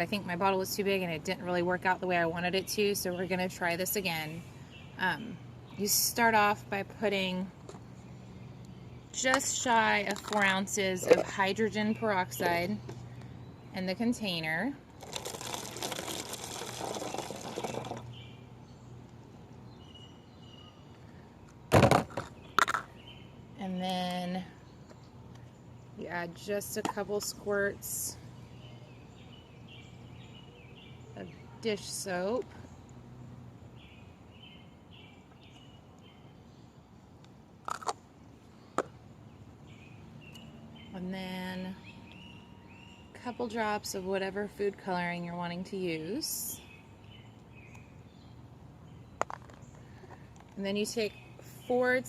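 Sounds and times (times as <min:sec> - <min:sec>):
liquid pouring into a container: 0:15.0 - 0:18.1.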